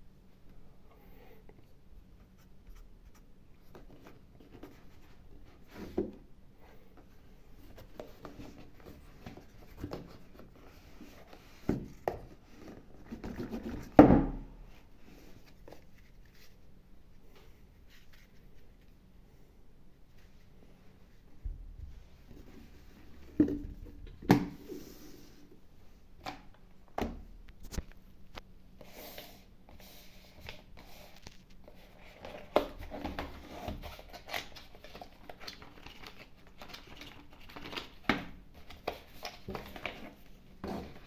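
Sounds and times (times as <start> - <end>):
packaging rustling: 30.6 - 41.0.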